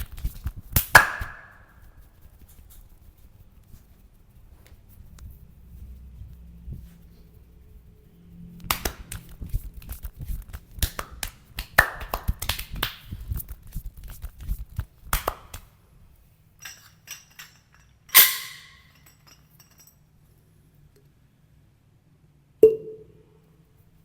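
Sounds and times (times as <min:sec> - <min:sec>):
hands slapping the body: 0:00.0 - 0:01.6, 0:08.6 - 0:15.7.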